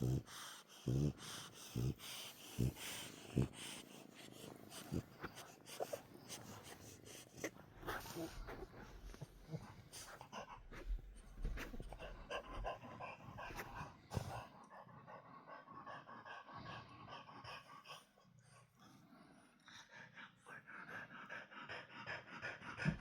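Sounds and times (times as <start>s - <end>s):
dog snoring: 0.0s - 8.4s.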